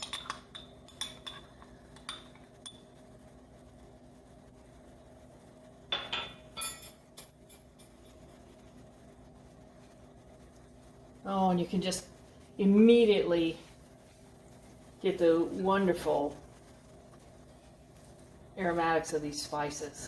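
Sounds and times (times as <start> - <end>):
metal spoons clinking on pot: 0.0 - 2.9, 5.9 - 8.1
faint steady hum: 0.0 - 20.0.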